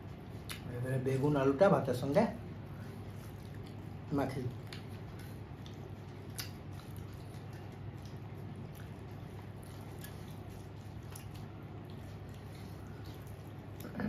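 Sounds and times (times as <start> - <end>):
steady low hum: 0.0 - 14.0
fingers squishing wet food: 2.1 - 13.9.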